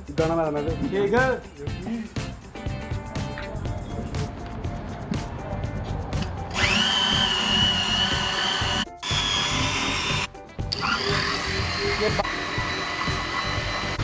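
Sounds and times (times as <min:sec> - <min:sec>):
background music: 0:00.0 - 0:14.0
grinder high whine: 0:06.5 - 0:14.0.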